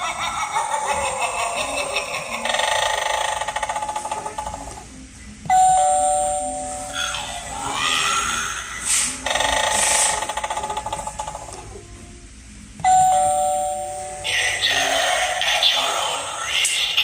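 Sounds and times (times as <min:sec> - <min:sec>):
two-tone ding-dong chime: 0:05.5 - 0:07.1, 0:12.8 - 0:14.3.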